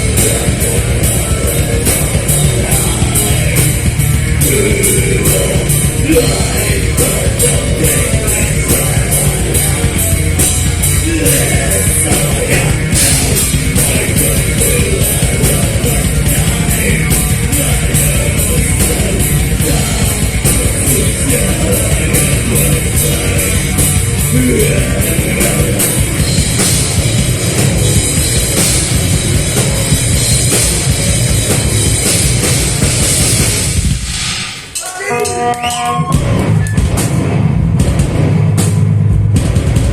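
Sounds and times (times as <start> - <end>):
live heavy rock band: 0.0 - 39.9
cymbals struck fast: 30.4 - 37.2.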